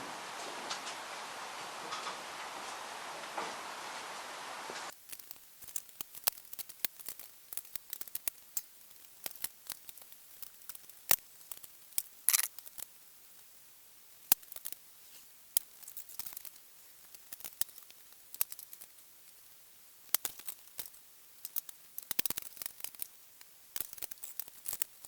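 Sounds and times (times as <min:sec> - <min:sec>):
steel panels being handled: 0:00.4 - 0:04.1.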